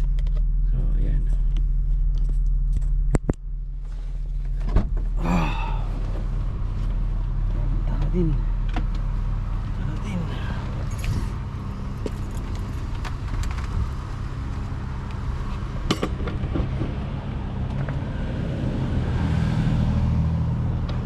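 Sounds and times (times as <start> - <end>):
vehicle engine idling: 0.0 - 21.0.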